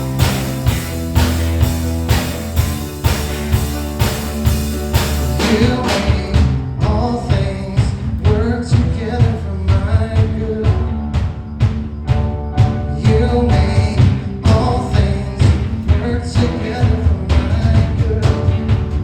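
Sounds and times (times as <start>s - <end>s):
band playing with drum beat: 0.0s - 19.0s
person singing: 5.4s - 11.0s, 12.8s - 18.5s.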